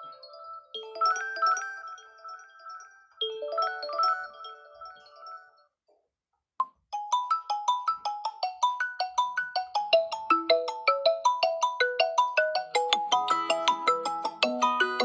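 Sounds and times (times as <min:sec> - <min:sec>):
marimba-like ringtone melody: 0:07.0 - 0:15.0
quick mallet-like ringtone notes: 0:07.0 - 0:15.0.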